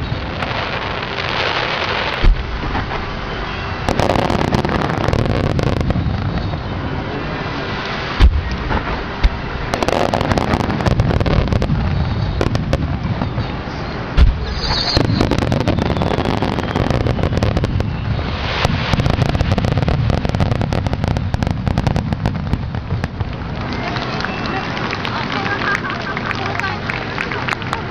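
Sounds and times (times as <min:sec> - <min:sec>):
fireworks crackling: 0:00.0 - 0:27.9
heavy firework boom: 0:02.0 - 0:23.7.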